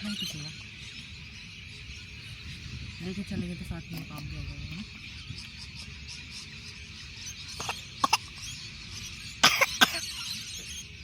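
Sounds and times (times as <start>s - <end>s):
baby coughing: 7.6s - 8.3s, 9.4s - 10.2s.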